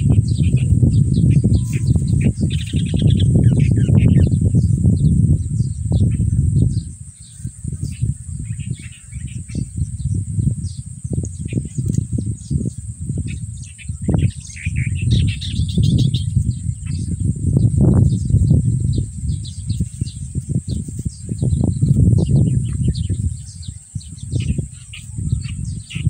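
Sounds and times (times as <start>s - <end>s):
birds chirping: 0.0s - 26.0s.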